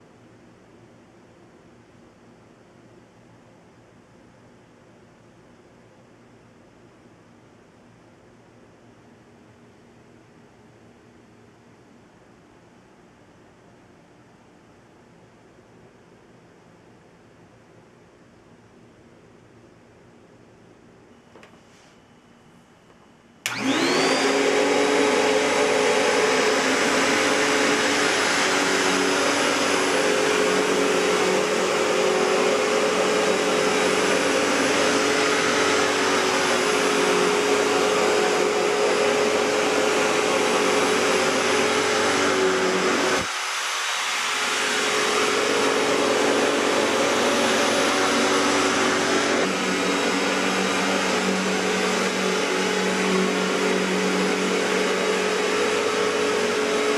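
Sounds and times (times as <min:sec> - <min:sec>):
vacuum cleaner running with high whine: 0:23.4 - 0:56.9.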